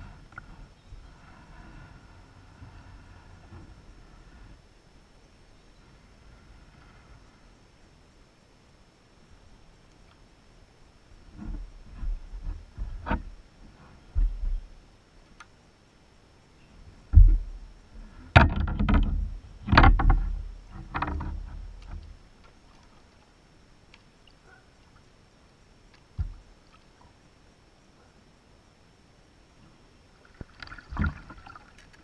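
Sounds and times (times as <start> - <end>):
low thump on a kayak: 14.1 - 14.7, 17.1 - 22.1, 26.1 - 26.4
sharp knocks and rattles: 17.1 - 17.6, 18.2 - 22.1.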